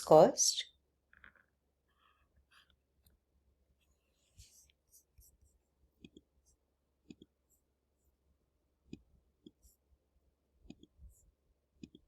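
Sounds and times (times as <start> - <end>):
faint pen clicks and taps: 7.0 - 7.4, 10.6 - 11.0, 11.8 - 12.0.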